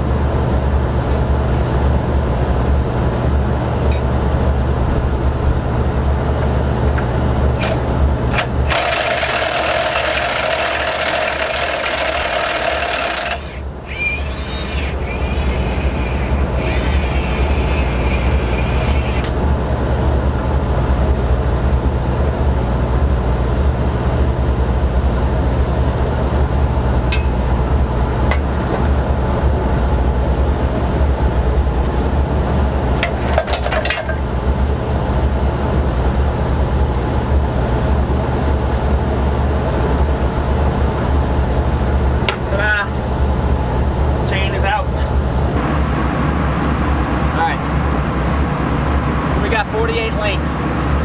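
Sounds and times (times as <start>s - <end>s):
low machine hum: 0.0s - 51.0s
thin high whine: 13.1s - 19.4s.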